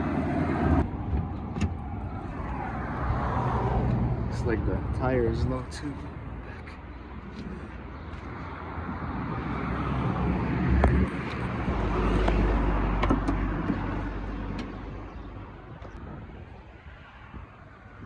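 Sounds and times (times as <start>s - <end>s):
road vehicle passing by: 0.0s - 1.0s, 1.8s - 15.9s.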